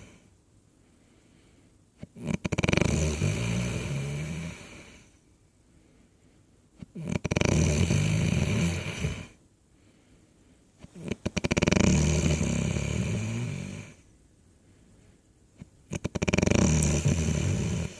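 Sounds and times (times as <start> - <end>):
person snoring: 0.0 - 0.2, 2.1 - 5.0, 6.9 - 9.4, 10.8 - 14.0, 15.9 - 17.9.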